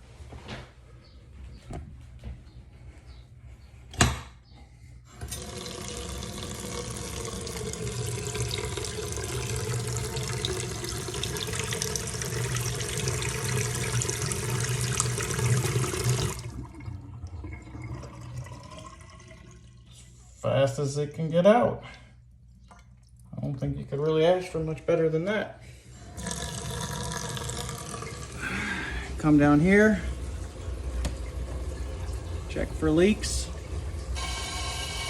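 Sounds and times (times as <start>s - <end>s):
faucet running water into sink: 5.2s - 19.8s, 26.0s - 35.0s
water draining: 5.2s - 20.0s, 26.0s - 35.0s.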